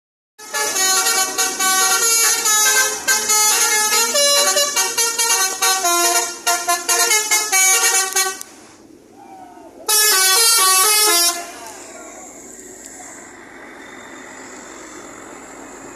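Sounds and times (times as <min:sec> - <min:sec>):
multi-note bus horn melody: 0:00.4 - 0:08.5, 0:09.9 - 0:11.7.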